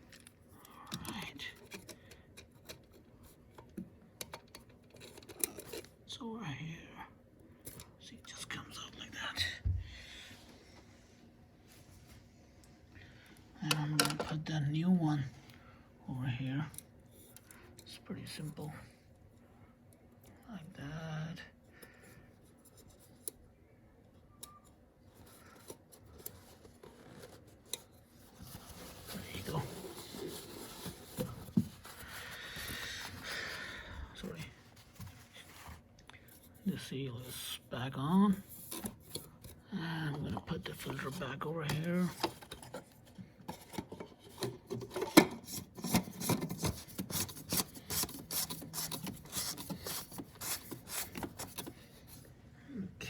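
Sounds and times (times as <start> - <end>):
faint handling noises: 0.0 - 6.1, 21.6 - 52.5
plastic scraping and clicking: 38.5 - 52.3.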